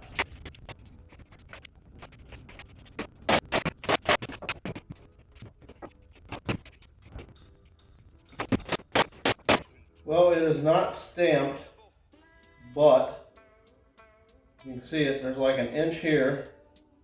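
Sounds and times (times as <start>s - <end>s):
metal parts clicking and clanking: 0.0s - 9.8s.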